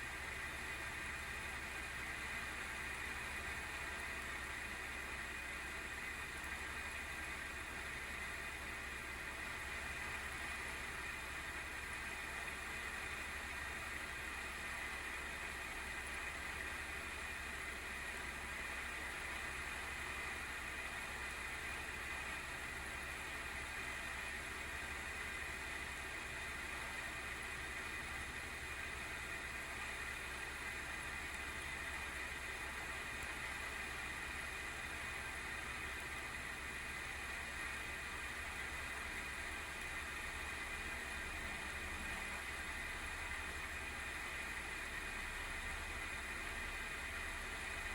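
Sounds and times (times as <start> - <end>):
cooling fan whirring: 0.0 - 47.9.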